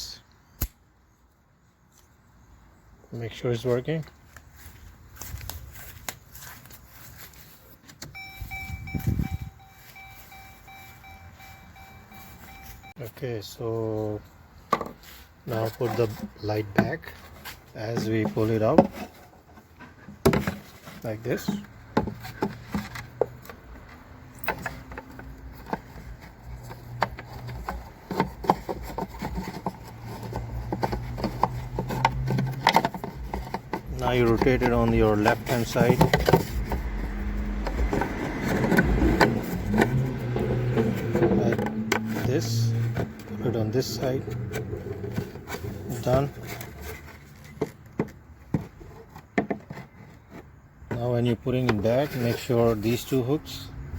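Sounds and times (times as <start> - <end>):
car warning chime beeping: 8.0 - 13.0.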